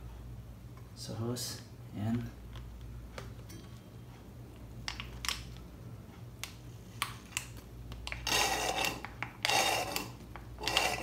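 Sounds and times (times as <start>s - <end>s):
plastic syringe clicks and handling: 4.8s - 5.6s, 6.4s - 8.3s.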